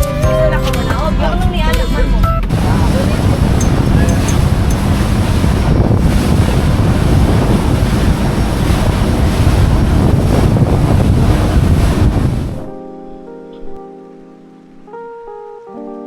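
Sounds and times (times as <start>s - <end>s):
wind buffeting microphone: 2.5s - 12.7s.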